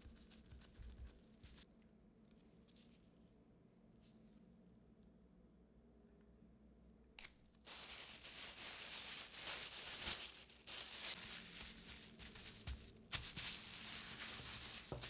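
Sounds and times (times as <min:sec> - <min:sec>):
kitchen scraping and rustling: 0:07.7 - 0:15.0.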